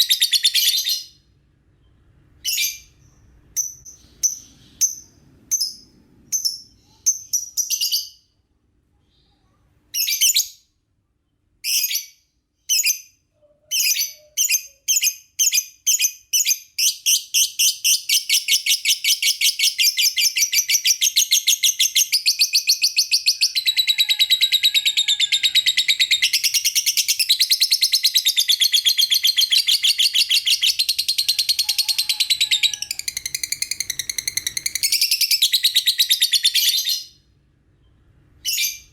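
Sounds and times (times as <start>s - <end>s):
lovebird high chirps: 0.0s - 1.2s, 13.7s - 37.2s, 38.4s - 38.9s.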